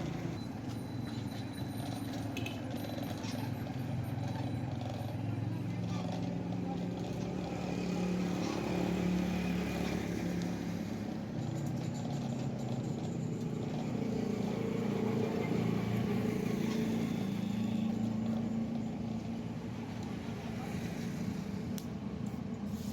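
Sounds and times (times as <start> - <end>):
engine humming steadily: 0.0 - 22.9.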